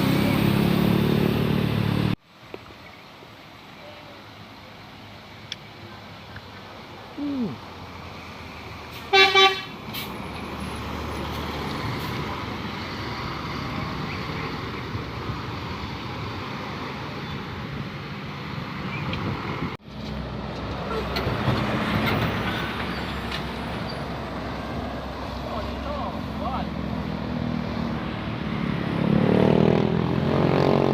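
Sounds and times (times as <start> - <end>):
vehicle engine and road noise: 0.0 - 30.9
bus horn toots: 9.1 - 9.8.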